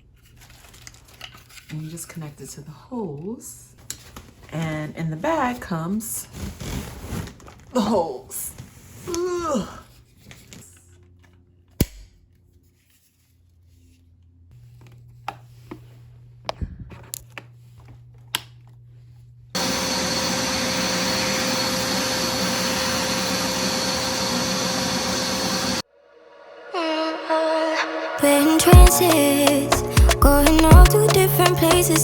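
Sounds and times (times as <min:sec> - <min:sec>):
carpet cleaner motor running: 0:19.6 - 0:25.8.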